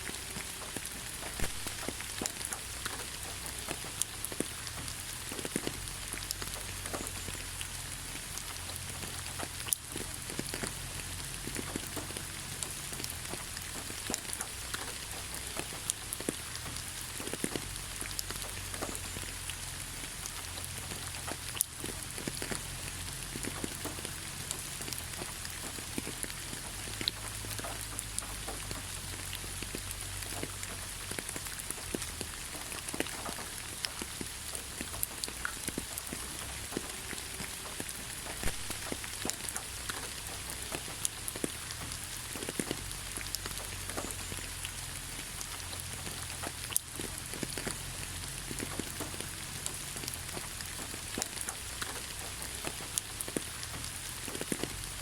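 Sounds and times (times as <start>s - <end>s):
rain falling on leaves: 0.0s - 55.0s.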